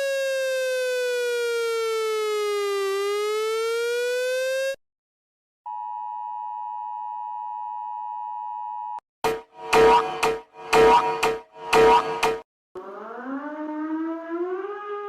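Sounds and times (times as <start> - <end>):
electronic siren sliding tone: 0.0 - 4.8, 9.3 - 15.0
steady electronic alert tone: 9.2 - 12.4
loud rhythmic blasts: 9.2 - 12.5.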